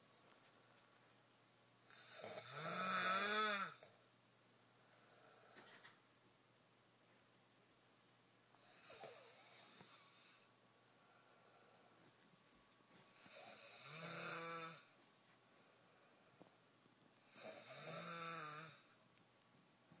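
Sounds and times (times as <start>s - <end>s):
man snoring: 1.9s - 3.9s, 8.6s - 10.5s, 13.2s - 15.0s, 17.2s - 19.0s.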